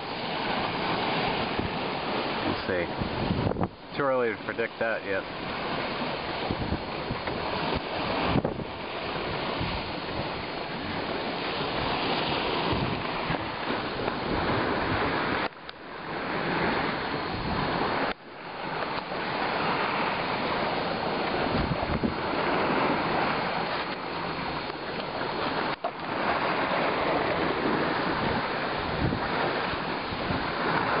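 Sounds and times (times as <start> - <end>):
steady rushing wind noise: 0.0 - 31.0.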